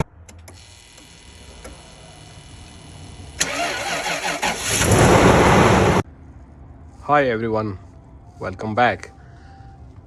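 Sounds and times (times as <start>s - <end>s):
car engine cranking and starting: 0.0s - 6.0s.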